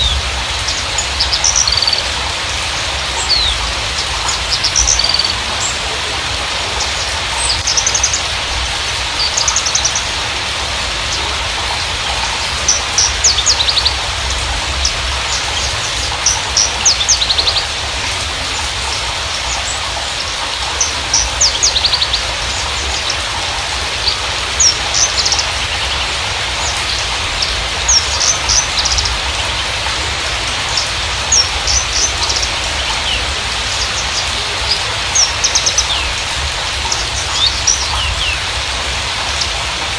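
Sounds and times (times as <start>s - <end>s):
bird chirps and trills: 0.0s - 39.9s
steady rain-like hiss: 0.0s - 39.9s.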